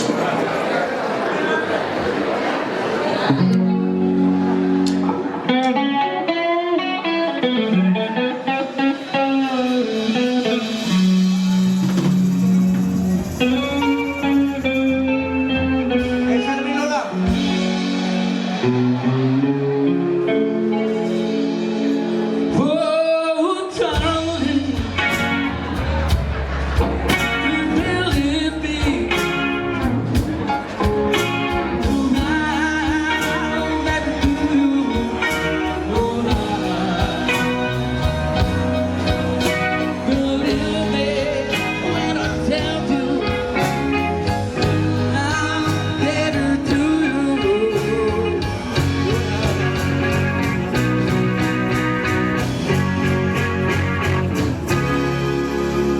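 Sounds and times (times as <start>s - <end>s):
song with singing and guitar band: 3.2s - 55.9s.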